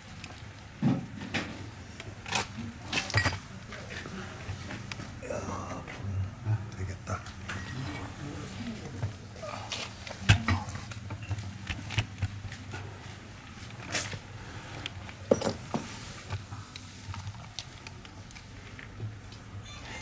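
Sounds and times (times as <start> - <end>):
ceramic pots knocking and clinking: 15.3 - 15.9.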